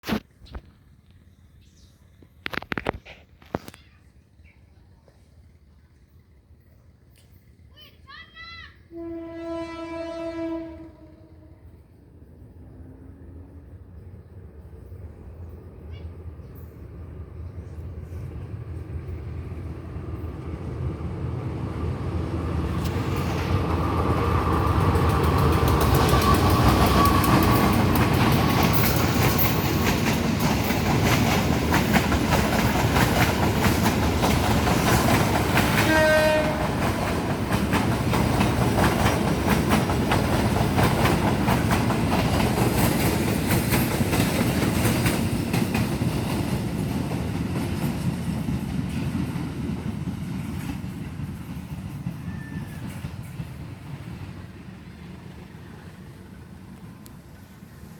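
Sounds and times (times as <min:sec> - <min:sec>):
short train horn note: 0:08.9 - 0:11.8, 0:35.7 - 0:36.9
train wheels clicking over rail joints: 0:22.5 - 0:54.6.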